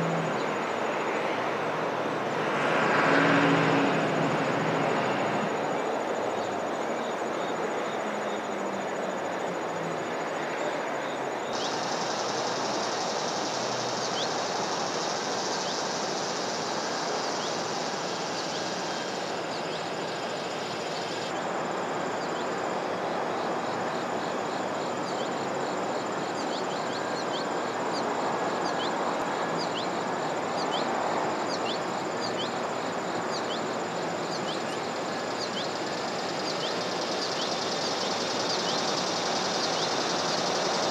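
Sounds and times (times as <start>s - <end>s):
background noise: 0.0s - 40.9s
insects trilling: 0.0s - 40.9s.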